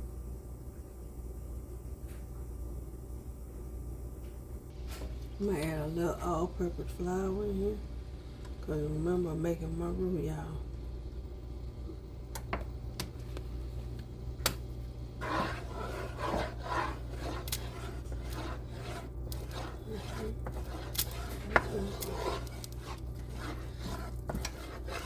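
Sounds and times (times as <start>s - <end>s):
spoon scraping a cooking pot: 15.2s - 25.0s.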